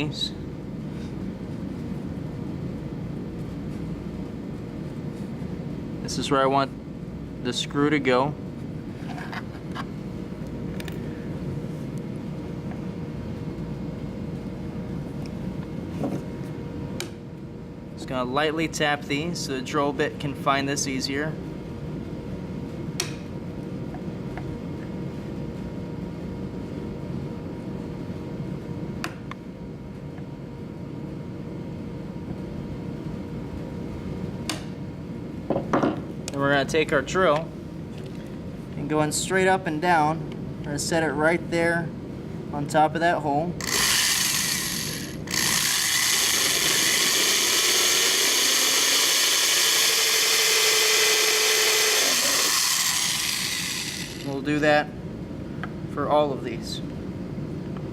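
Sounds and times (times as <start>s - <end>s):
ventilation hum: 0.0s - 57.9s
electric drill whining: 43.6s - 54.3s.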